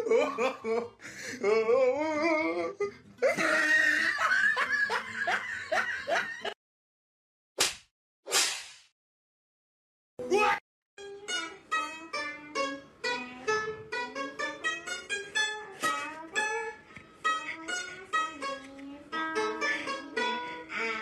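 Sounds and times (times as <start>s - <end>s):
plucked string melody: 11.0s - 21.0s.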